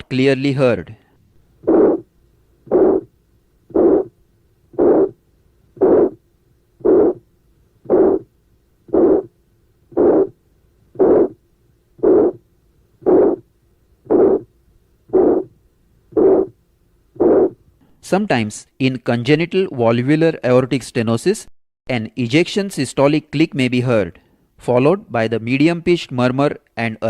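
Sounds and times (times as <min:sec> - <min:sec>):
heartbeat with harsh murmur: 0:01.6 - 0:02.1, 0:02.7 - 0:05.2, 0:05.8 - 0:06.2, 0:06.8 - 0:11.4, 0:12.0 - 0:14.5, 0:15.1 - 0:16.6, 0:17.2 - 0:17.6.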